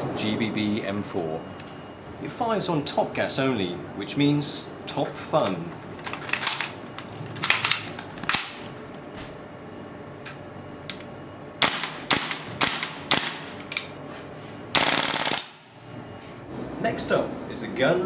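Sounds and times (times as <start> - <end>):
airsoft rifle firing: 11.6 - 13.8, 14.8 - 15.8.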